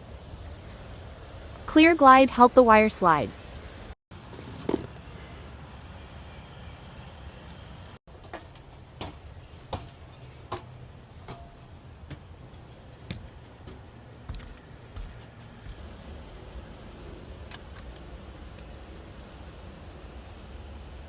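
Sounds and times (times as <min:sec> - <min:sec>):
steady low rumble: 0:14.0 - 0:21.0.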